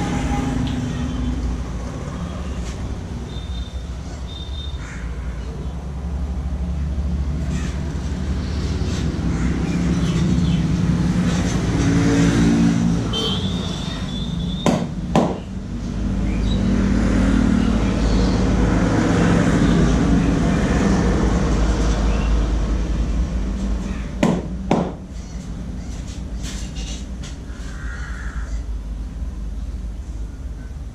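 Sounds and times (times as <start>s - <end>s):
road traffic rumble: 0.0s - 30.9s
sharp knocks: 14.6s - 15.5s, 24.2s - 25.1s.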